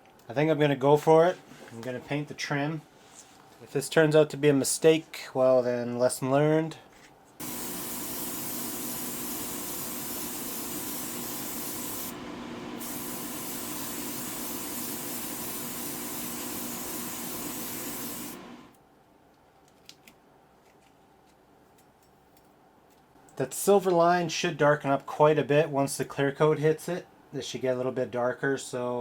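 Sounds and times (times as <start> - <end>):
airbrush spraying air hiss: 7.4 - 18.8
steady low hum: 7.4 - 18.8.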